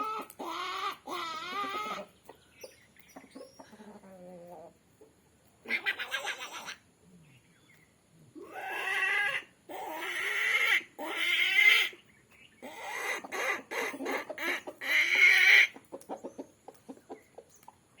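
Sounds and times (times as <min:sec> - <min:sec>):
chicken clucking: 0:00.0 - 0:06.8, 0:12.6 - 0:17.8.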